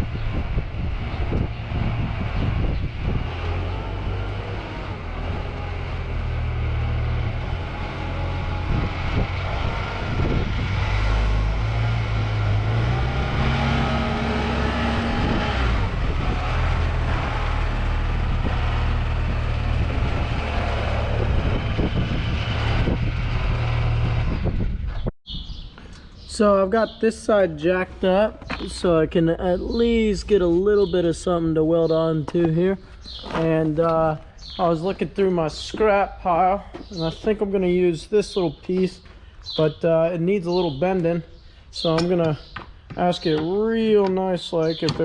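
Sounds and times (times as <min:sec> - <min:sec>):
engine running: 0:00.0 - 0:25.1.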